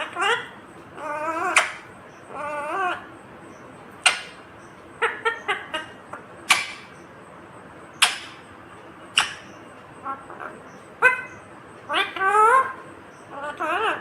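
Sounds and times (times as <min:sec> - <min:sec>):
parrot chirps: 0:00.0 - 0:03.1, 0:04.0 - 0:07.1, 0:07.9 - 0:08.5, 0:09.1 - 0:14.0
parrot warbled call: 0:00.0 - 0:03.1, 0:04.0 - 0:04.4, 0:05.0 - 0:07.0, 0:07.9 - 0:08.4, 0:09.1 - 0:14.0.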